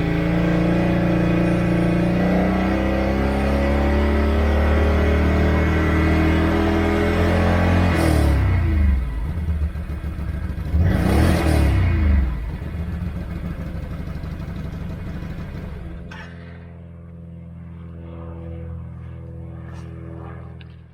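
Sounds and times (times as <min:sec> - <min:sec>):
atv engine revving: 0:00.0 - 0:16.2.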